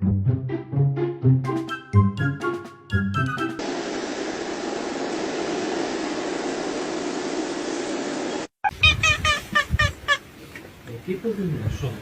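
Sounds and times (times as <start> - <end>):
steady rushing noise: 3.6 - 8.5.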